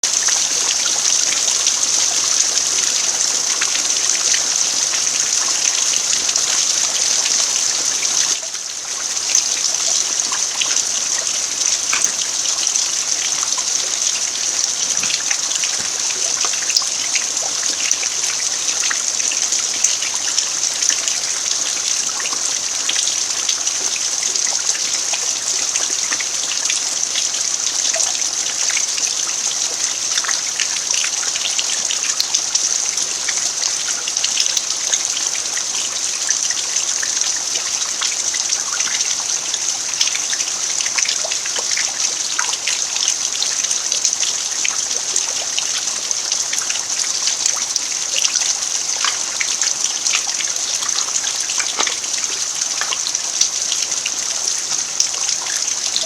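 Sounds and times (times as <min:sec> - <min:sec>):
rain falling on dirt: 0:00.0 - 0:56.0.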